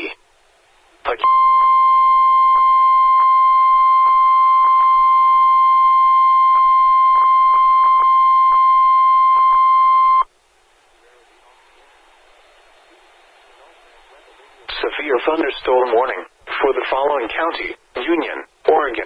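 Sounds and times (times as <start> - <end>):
loud steady alert tone: 1.1 - 10.2.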